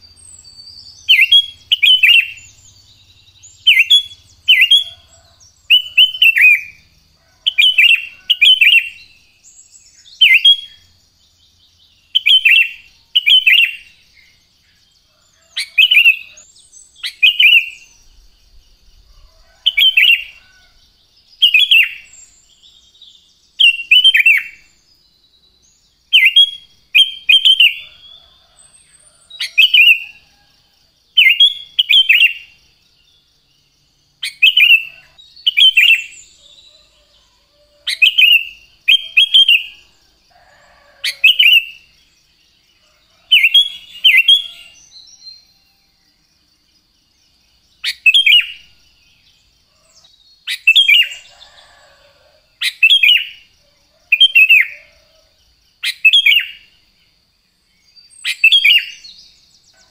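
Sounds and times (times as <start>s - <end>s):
bulbul calling: 0.8s - 6.8s.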